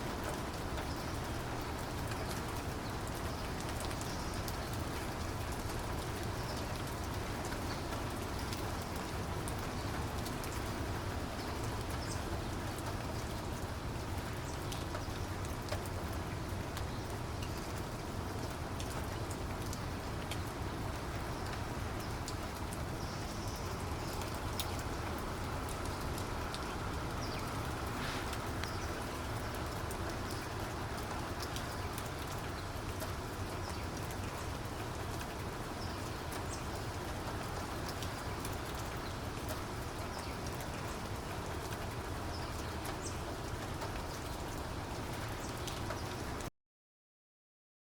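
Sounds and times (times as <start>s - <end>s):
steady rain: 0.0s - 46.5s.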